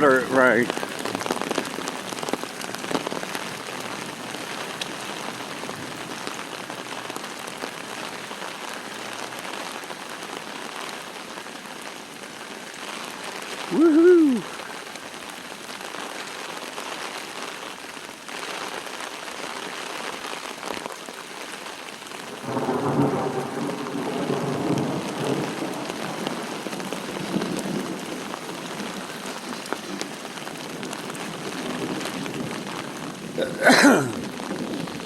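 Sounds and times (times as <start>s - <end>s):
steady rain falling: 0.0s - 35.0s
thunder rumbling: 22.4s - 35.0s.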